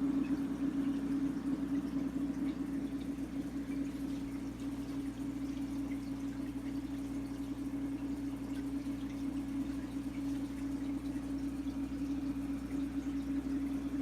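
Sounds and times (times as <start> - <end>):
aquarium pump humming: 0.0 - 14.0
water trickling and dripping: 0.0 - 14.0.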